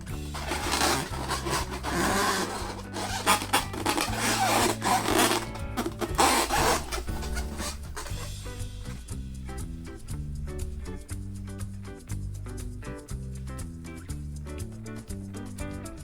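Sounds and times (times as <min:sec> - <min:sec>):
balloons rubbing: 0:00.0 - 0:08.7
background music: 0:00.0 - 0:16.0.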